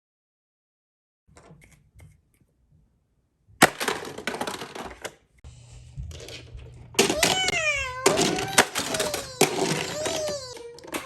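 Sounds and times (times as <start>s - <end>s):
plastic toy rattling clatter: 3.7s - 5.2s, 6.1s - 11.0s.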